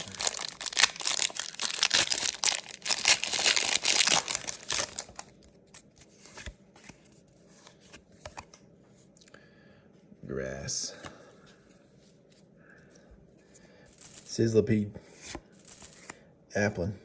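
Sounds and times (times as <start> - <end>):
foil wrapper tearing and crinkling: 0.0 - 5.4.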